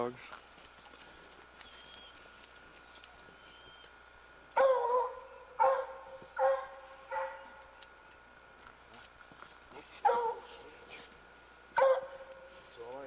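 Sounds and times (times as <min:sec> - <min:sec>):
hound barking: 0:04.6 - 0:07.7, 0:09.9 - 0:11.0, 0:11.8 - 0:12.6.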